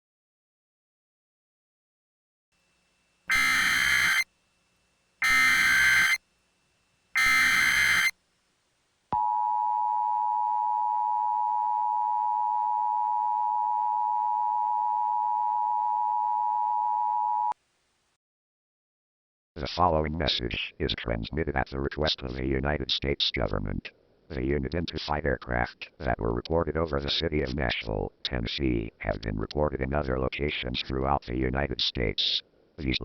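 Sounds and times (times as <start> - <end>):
screeching data tones: 3.3 - 4.3, 5.2 - 6.2, 7.2 - 8.2
two-tone attention signal: 3.3 - 4.3, 5.2 - 6.2, 7.2 - 8.1.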